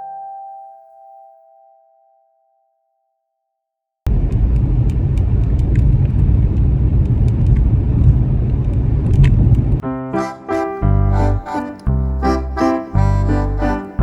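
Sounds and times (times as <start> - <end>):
piano music: 0.0 - 2.6, 9.8 - 14.0.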